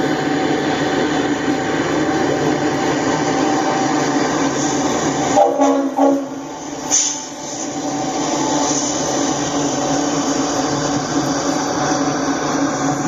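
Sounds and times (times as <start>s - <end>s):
diesel locomotives running: 0.0s - 13.0s
locomotive horn blasts: 5.4s - 6.4s
brief hiss: 6.9s - 7.9s.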